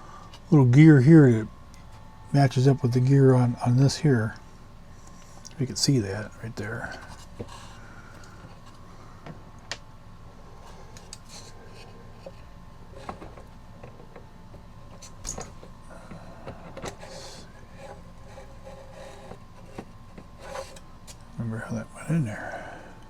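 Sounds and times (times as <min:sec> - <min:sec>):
faint steady hum: 0:00.0 - 0:23.0
soft rubbing of small parts: 0:06.6 - 0:08.9, 0:10.5 - 0:14.2, 0:14.9 - 0:21.3.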